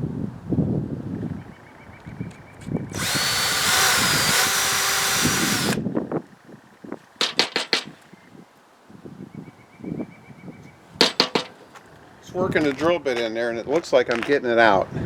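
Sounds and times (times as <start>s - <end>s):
power drill motor whine: 2.9s - 5.8s.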